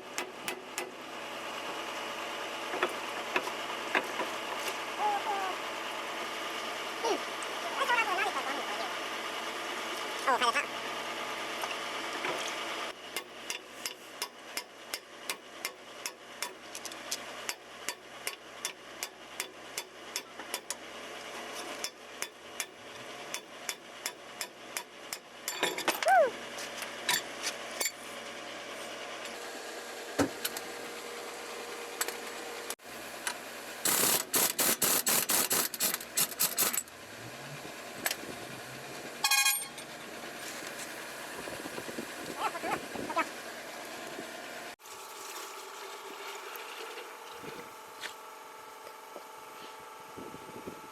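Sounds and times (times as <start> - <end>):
metallic taps on axle: 13.1 - 20.8, 21.8 - 26.1.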